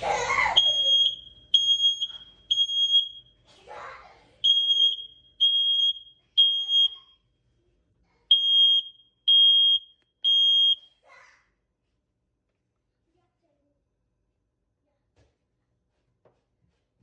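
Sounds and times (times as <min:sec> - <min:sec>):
high-pitched alarm beeps: 0:00.6 - 0:03.3, 0:04.4 - 0:07.2, 0:08.3 - 0:10.8.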